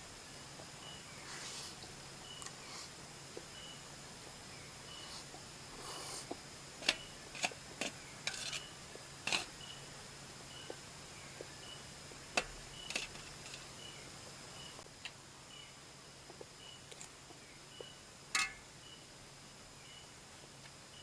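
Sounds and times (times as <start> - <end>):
faint high chirp: 0.8 - 1.4, 3.5 - 3.8, 16.6 - 19.1, 19.8 - 20.1
metal utensils knocking on bowl: 18.4 - 18.6.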